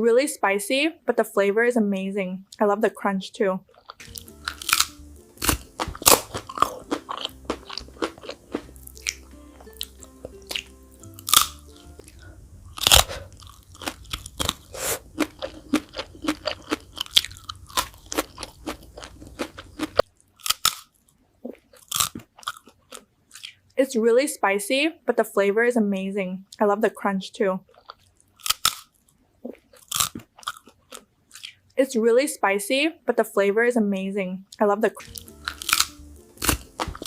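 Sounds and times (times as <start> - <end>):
crunching and chewing: 3.7 - 23.6, 27.7 - 31.6, 35.0 - 37.0
soft background music: 4.0 - 14.6, 15.2 - 20.2, 33.4 - 37.0.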